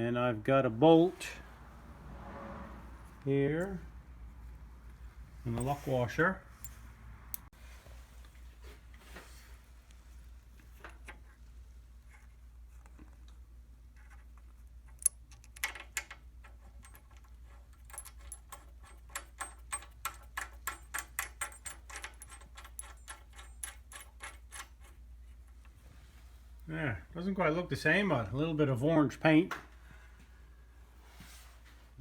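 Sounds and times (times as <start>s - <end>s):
metal clinks: 16.6s - 24.7s.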